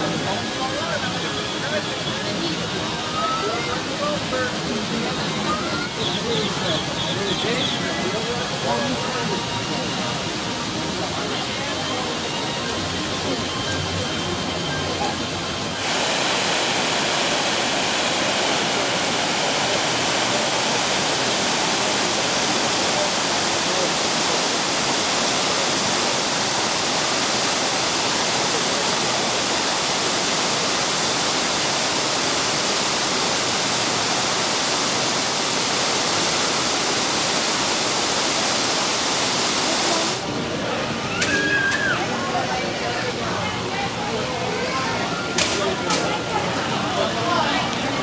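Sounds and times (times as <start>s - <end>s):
falling splashing water: 15.2s - 42.6s.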